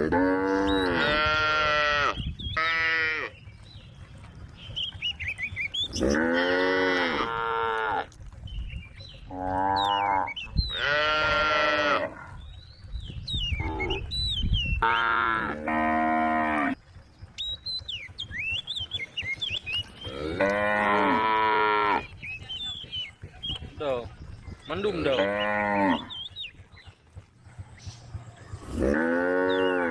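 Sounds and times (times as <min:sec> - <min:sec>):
cows mooing: 0:00.0 - 0:03.4, 0:05.8 - 0:08.2, 0:09.3 - 0:12.4, 0:13.6 - 0:14.1, 0:14.8 - 0:16.8, 0:20.0 - 0:22.2, 0:24.9 - 0:26.2, 0:28.5 - 0:29.9.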